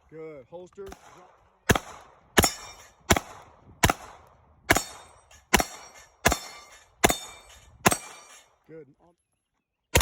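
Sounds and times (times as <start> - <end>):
gunshots: 0.9 - 8.4.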